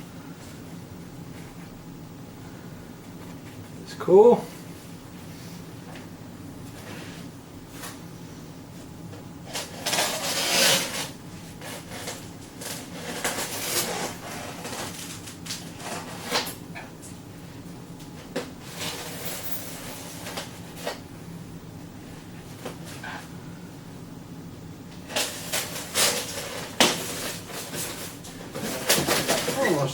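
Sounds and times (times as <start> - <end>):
rustling and scraping of box: 9.5 - 16.5, 25.1 - 29.9.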